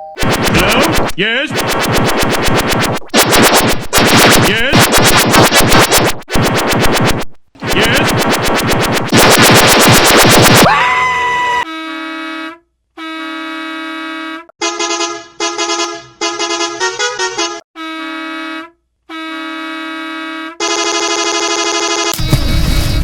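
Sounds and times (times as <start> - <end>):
bus air horn blasting: 11.6 - 22.2.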